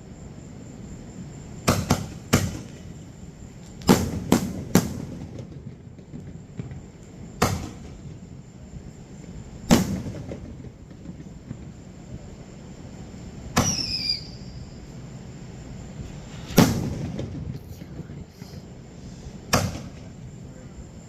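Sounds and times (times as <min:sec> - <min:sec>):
fireworks bangs with echoes: 0:01.6 - 0:03.0, 0:03.8 - 0:08.3, 0:09.5 - 0:11.8, 0:13.5 - 0:14.3, 0:16.4 - 0:17.9, 0:19.3 - 0:20.4.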